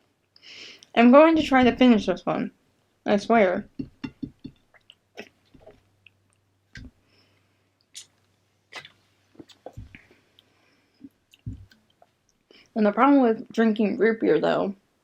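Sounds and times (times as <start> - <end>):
low thuds: 9.4 - 10.0, 11.4 - 11.8.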